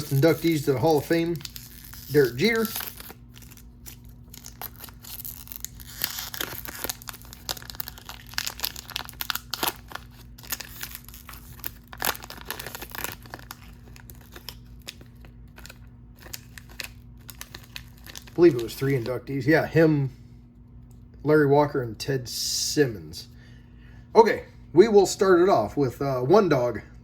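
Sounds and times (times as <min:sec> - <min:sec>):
wrapper tearing and crinkling: 0:00.0 - 0:19.1
faint low hum: 0:00.0 - 0:27.0.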